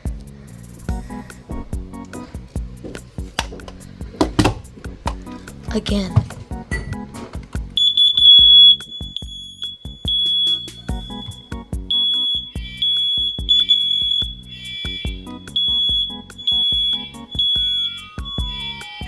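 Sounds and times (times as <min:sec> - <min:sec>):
smoke alarm beeping: 0:07.8 - 0:14.8, 0:15.5 - 0:18.6.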